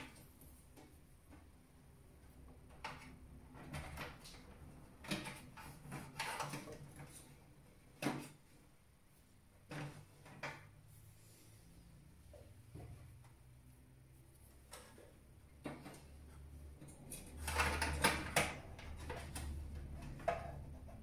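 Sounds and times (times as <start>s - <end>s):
clicks and knocks of computer parts: 2.6s - 8.5s, 9.6s - 10.8s, 14.6s - 21.0s.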